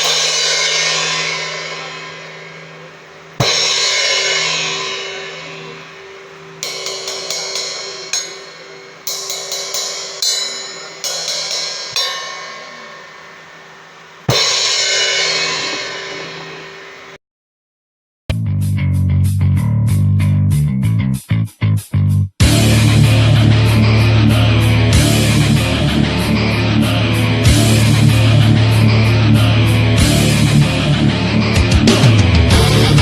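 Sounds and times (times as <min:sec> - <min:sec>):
cymbal crash ringing: 0:00.0 - 0:17.2, 0:22.4 - 0:33.0
light cymbal strokes: 0:00.0 - 0:17.2.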